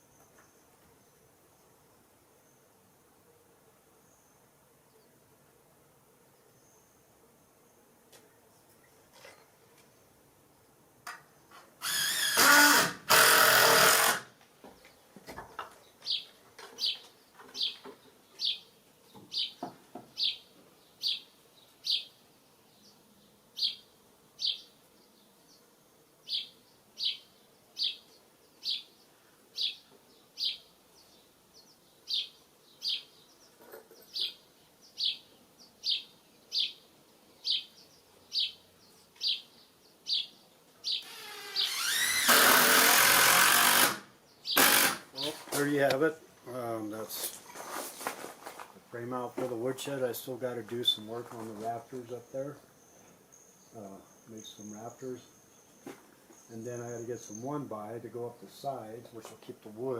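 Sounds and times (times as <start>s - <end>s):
bird chirping: 14.8s - 42.2s, 44.2s - 46.1s, 50.0s - 59.0s.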